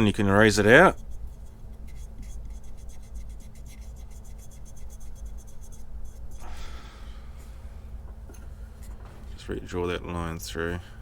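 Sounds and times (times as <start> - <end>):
pencil scratching on wood: 0.0 - 6.5
faint steady hum: 0.0 - 11.0
eraser rubbing: 0.2 - 6.5.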